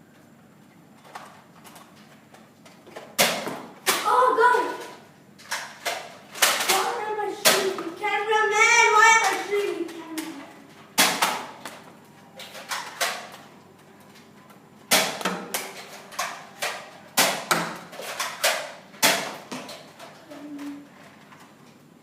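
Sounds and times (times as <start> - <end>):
foam dart blasters firing: 11.0 - 11.6, 14.9 - 15.8, 16.6 - 19.4.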